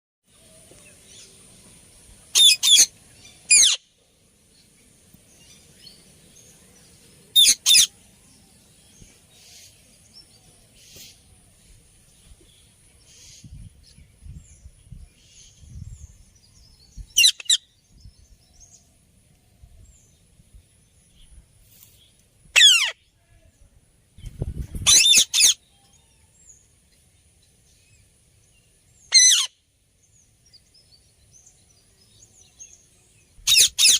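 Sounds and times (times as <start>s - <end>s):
parrot shrill calls: 2.3s - 2.9s, 3.5s - 3.8s, 7.4s - 7.9s, 17.2s - 17.6s, 22.6s - 23.0s, 24.8s - 25.6s, 29.1s - 29.5s, 33.5s - 33.9s.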